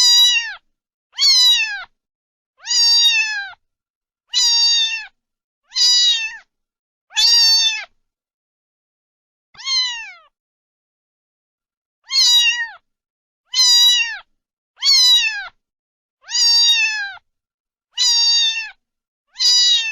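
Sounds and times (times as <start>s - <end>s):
cat meowing: 0.0s - 0.6s, 1.2s - 1.9s, 2.6s - 3.6s, 4.3s - 6.5s, 7.1s - 8.0s, 9.6s - 10.3s, 12.0s - 12.8s, 13.5s - 15.6s, 16.2s - 17.2s, 18.0s - 19.9s.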